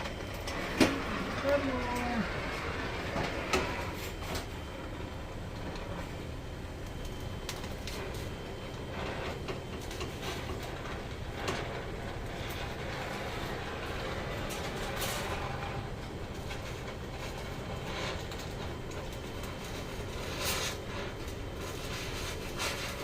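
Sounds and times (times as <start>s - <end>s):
low mechanical rumble: 0.0s - 23.0s.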